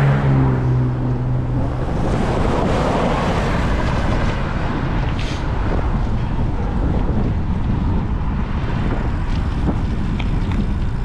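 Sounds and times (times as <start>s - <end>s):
motor vehicle engine passing: 0.0s - 7.4s
wind buffeting microphone: 0.0s - 11.0s.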